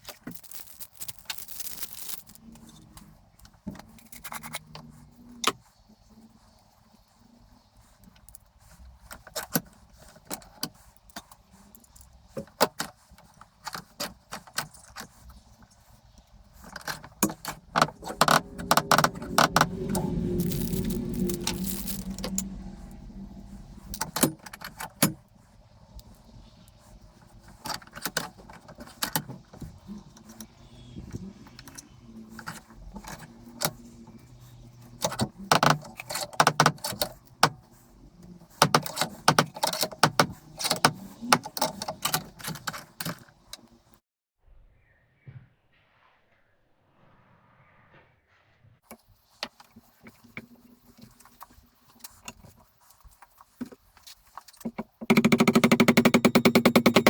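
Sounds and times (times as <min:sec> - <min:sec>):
small metal parts clinking: 0:00.0 - 0:02.4, 0:20.4 - 0:22.4
low rumble: 0:17.6 - 0:25.8.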